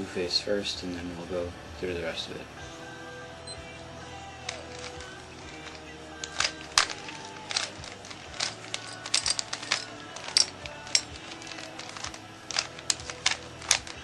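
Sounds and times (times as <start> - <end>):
plastic cube layers clicking: 4.5 - 14.0.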